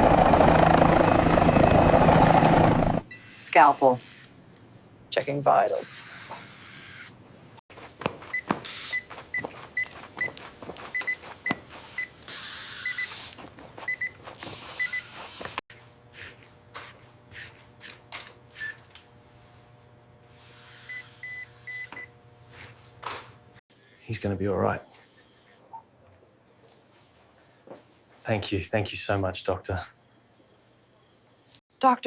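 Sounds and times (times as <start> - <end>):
short bursts of hiss: 11.8 - 13.4.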